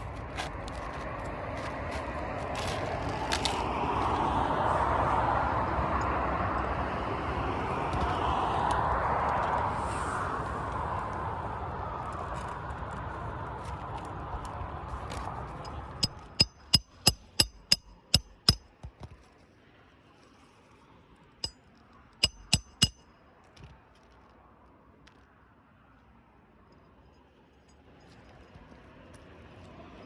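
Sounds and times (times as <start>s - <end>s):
road vehicle passing by: 0.0s - 16.0s.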